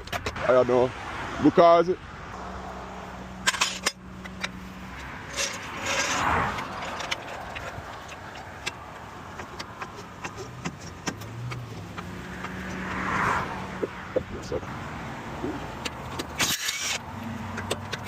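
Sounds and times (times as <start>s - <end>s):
highway traffic passing: 0.0s - 18.0s
car swishing by: 5.0s - 6.9s, 11.2s - 15.2s.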